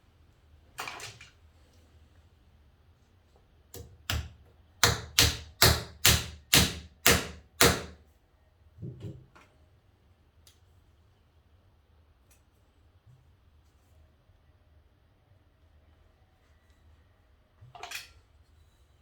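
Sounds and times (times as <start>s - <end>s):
hammer knocking wooden dowel: 3.8s - 8.0s.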